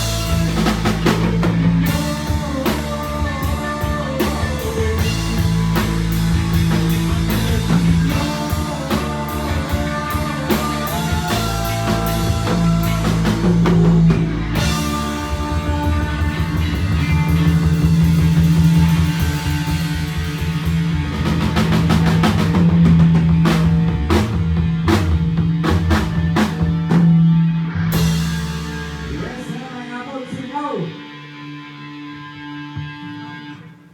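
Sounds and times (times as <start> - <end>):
live rock band playing: 0.0 - 33.9.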